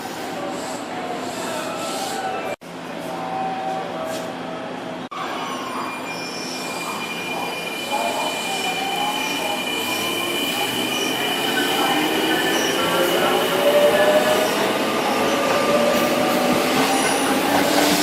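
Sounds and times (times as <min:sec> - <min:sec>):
train wheels on rails: 0:09.4 - 0:18.0.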